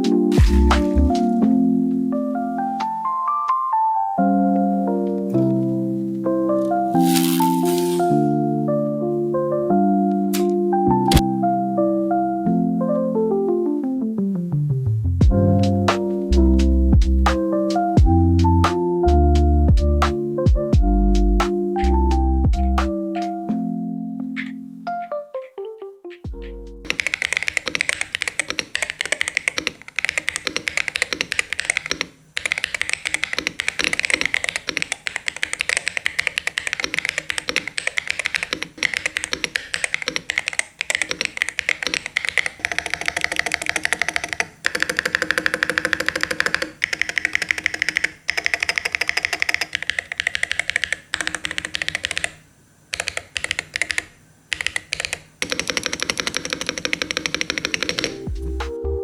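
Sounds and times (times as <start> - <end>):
keyboard typing fast: 0.0 - 1.4, 26.2 - 58.4.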